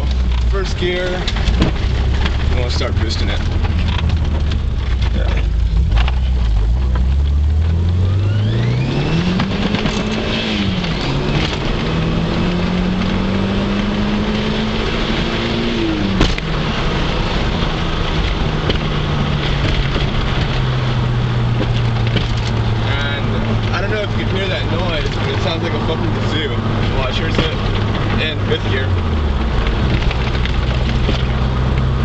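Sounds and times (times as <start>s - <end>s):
turbo engine accelerating: 0.0s - 32.0s
thin rising whine: 5.6s - 14.3s.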